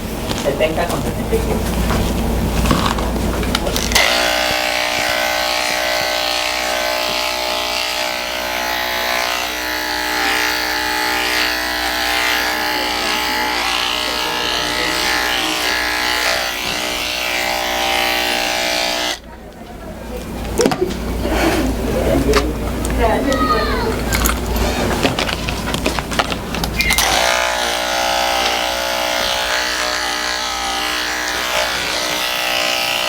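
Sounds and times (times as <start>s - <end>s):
electric clippers buzzing: 3.7s - 19.2s, 26.8s - 33.0s.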